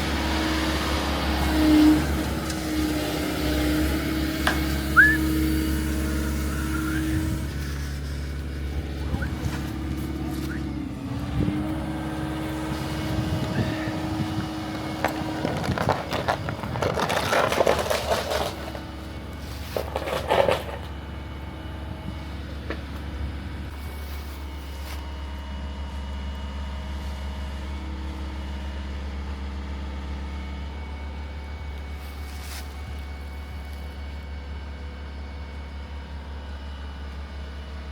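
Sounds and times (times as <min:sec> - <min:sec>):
excavator engine running: 0:00.0 - 0:37.9
rock crunching and scraping: 0:12.6 - 0:21.0.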